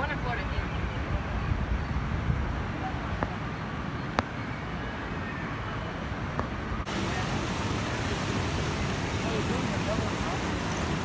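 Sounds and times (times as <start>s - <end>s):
faint voices: 6.9s - 11.0s.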